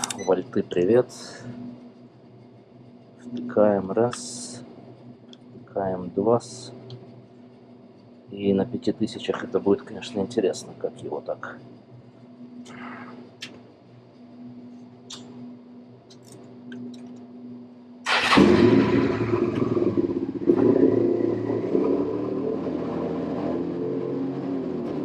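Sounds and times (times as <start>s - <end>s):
motorcycle engine starting and idling: 18.0s - 25.0s.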